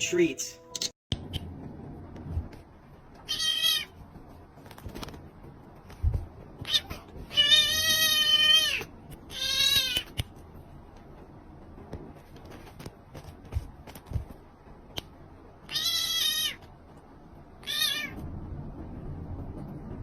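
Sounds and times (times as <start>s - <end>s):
cat meowing: 3.2s - 4.0s, 6.6s - 10.1s, 15.6s - 16.7s, 17.6s - 18.2s.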